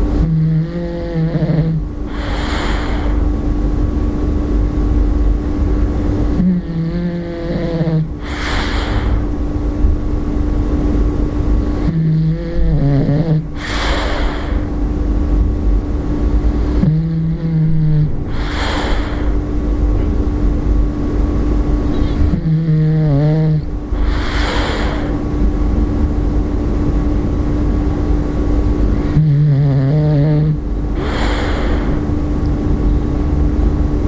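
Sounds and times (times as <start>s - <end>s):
dog snoring: 0.2s - 3.2s, 6.4s - 9.3s, 11.8s - 14.7s, 16.6s - 19.4s, 22.0s - 25.2s, 29.0s - 32.0s.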